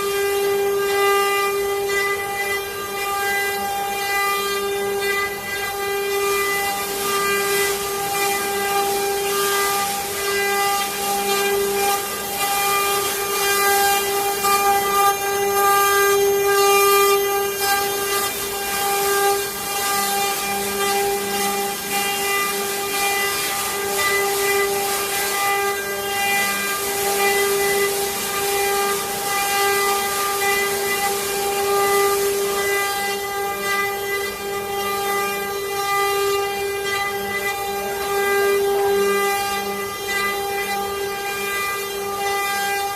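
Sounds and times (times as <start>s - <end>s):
router spindle whine: 0.0s - 42.9s
scratchy cutting hiss: 6.6s - 33.6s.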